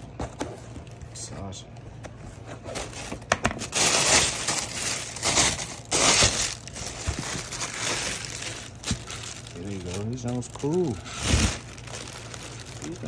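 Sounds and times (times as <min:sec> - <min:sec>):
packaging crinkling and crushing: 0:02.6 - 0:13.0.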